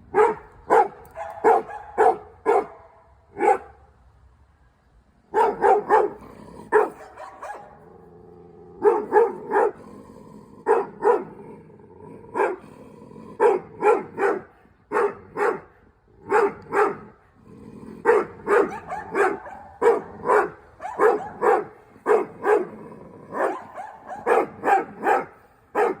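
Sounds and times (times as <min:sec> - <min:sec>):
low drawn-out dog sounds: 0:00.0 - 0:03.9, 0:05.4 - 0:26.0
dogs barking: 0:00.1 - 0:03.8, 0:05.3 - 0:08.0, 0:08.7 - 0:09.8, 0:10.6 - 0:11.4, 0:12.3 - 0:12.7, 0:13.4 - 0:17.2, 0:18.0 - 0:26.0.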